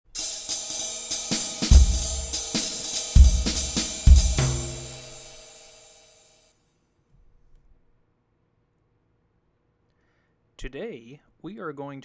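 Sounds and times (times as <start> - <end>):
heavy bass drum accents: 0.0 - 5.8
drum kit music: 0.0 - 6.2
held chord: 0.2 - 6.2.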